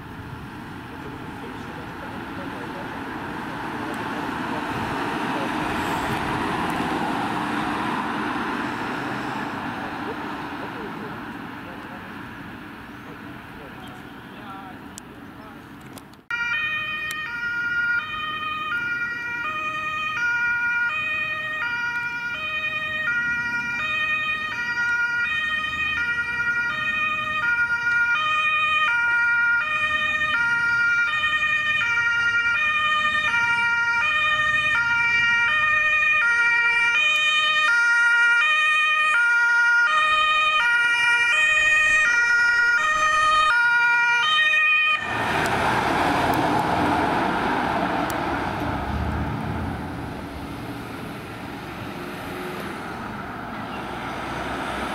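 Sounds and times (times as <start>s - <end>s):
vehicle rushing past: 0.9s - 12.9s, 44.8s - 54.9s
two-tone siren: 16.3s - 45.6s.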